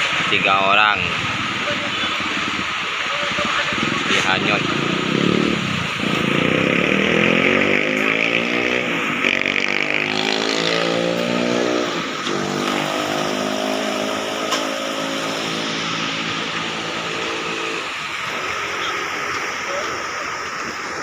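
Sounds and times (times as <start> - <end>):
motorcycle engines accelerating: 0.0 - 21.0
steady hiss: 11.2 - 21.0.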